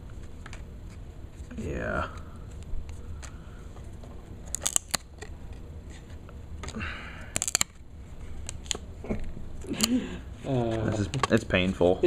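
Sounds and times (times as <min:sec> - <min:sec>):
cards sliding rustle: 0:00.1 - 0:08.9
cardboard cards clicking and snapping: 0:04.4 - 0:05.7, 0:06.6 - 0:07.8, 0:08.4 - 0:08.9.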